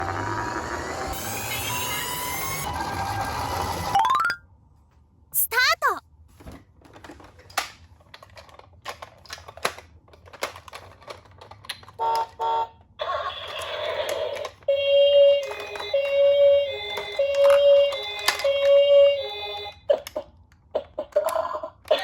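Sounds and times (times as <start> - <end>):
toy electronic two-tone siren: 1.1 - 3.0, 12.1 - 19.8.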